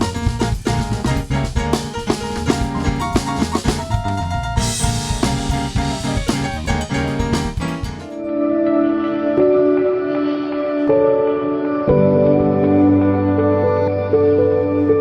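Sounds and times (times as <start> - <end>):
drum kit beat: 0.0 - 8.2
pitched melodic notes: 0.0 - 8.2.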